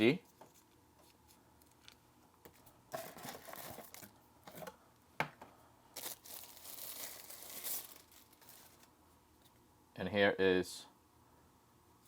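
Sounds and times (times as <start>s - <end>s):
items rustling being unpacked: 2.5s - 4.7s, 6.0s - 8.9s.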